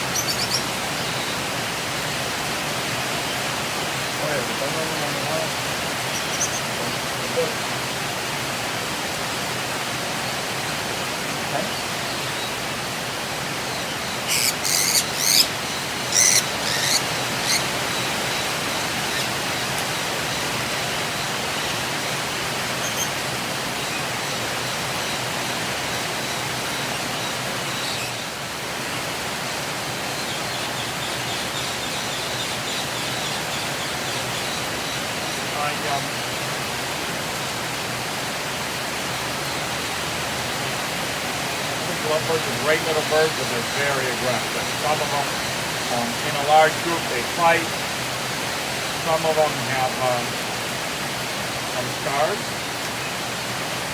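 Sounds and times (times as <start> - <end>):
lovebirds shrieking: 0.0 - 2.5, 4.7 - 7.6, 13.5 - 28.4, 30.1 - 36.0.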